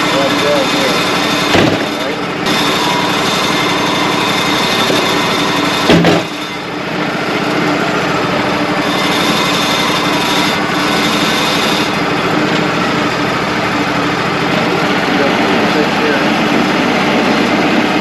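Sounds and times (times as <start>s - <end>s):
band sawmill sawing log: 0.0s - 18.0s
loud knock: 1.5s - 2.0s, 5.9s - 6.4s.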